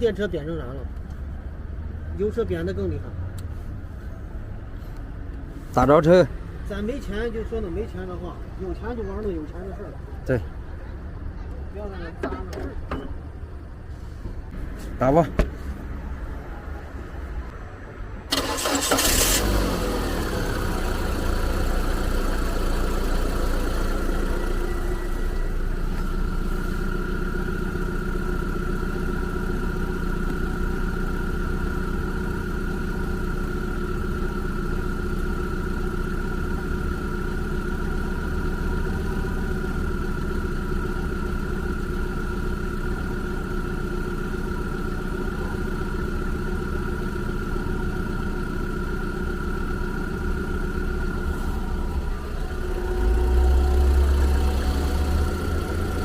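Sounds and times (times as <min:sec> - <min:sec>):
car engine idling: 0:00.0 - 0:56.0
car engine cranking and starting: 0:18.2 - 0:56.0.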